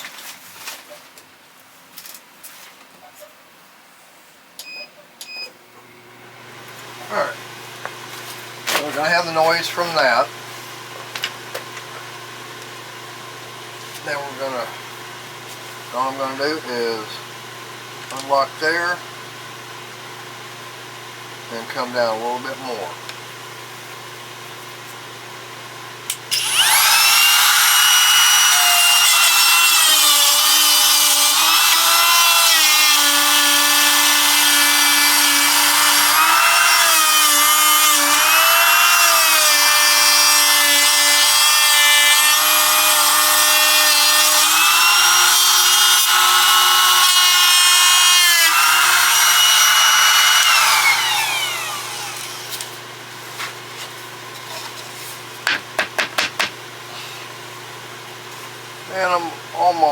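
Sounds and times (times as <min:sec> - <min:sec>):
router cutting wood: 0:26.1 - 0:52.8.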